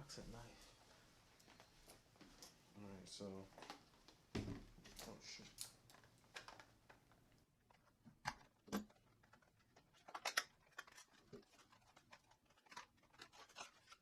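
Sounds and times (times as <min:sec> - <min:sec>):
box packaging being opened: 0:07.8 - 0:14.0.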